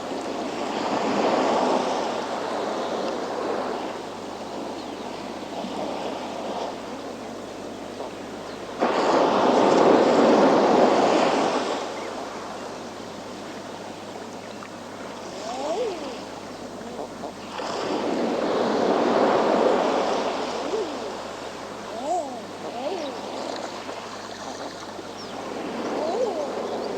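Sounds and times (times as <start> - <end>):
seabird calls: 0.0 - 8.8, 11.8 - 26.9
waves breaking on rocky shore: 0.0 - 26.9.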